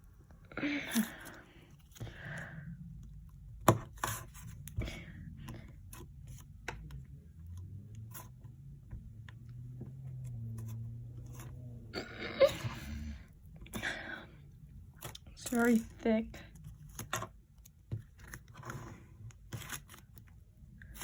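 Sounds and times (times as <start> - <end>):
light scraping and rubbing: 9.8 - 11.9.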